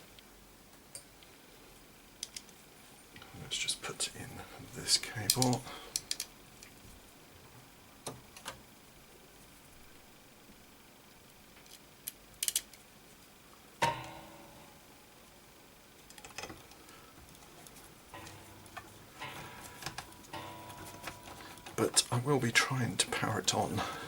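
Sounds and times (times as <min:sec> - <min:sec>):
computer parts clicking and tapping: 0:05.1 - 0:06.3, 0:11.6 - 0:12.8, 0:16.0 - 0:22.2
sharp ringing knock: 0:13.8 - 0:14.8.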